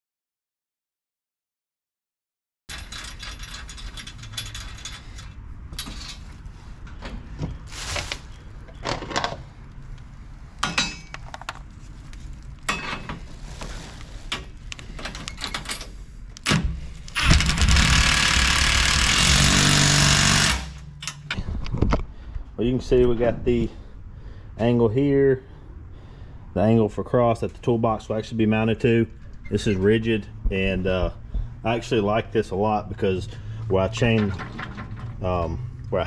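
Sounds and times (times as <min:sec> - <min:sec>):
steel parts clinking: 0:02.7 - 0:06.3, 0:10.6 - 0:11.4
power tool running: 0:17.2 - 0:20.8.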